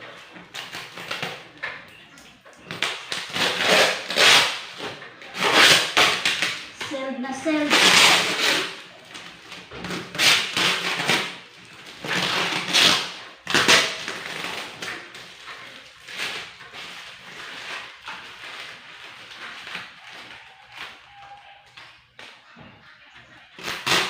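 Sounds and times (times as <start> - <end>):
cardboard tearing: 2.7 - 6.8, 7.4 - 21.0, 23.6 - 24.0.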